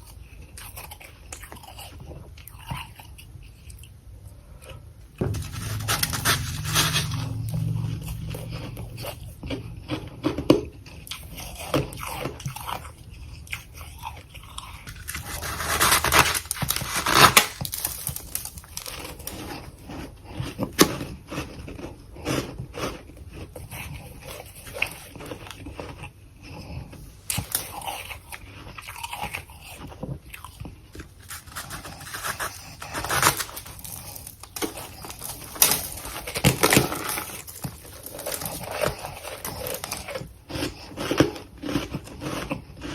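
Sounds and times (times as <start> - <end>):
person crunching frost: 8.9 - 42.9.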